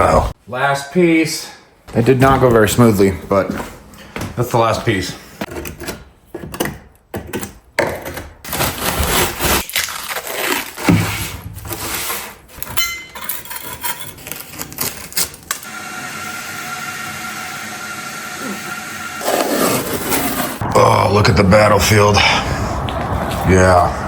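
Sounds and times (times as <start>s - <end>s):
tools and tiles clattering: 5.4s - 9.6s, 10.2s - 15.6s.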